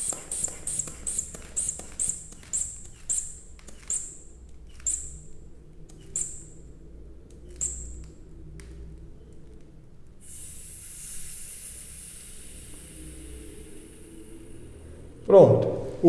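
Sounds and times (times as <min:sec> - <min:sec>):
inflation bulb squeezed with clicks: 0:00.0 - 0:05.2, 0:05.9 - 0:06.5, 0:10.2 - 0:14.9.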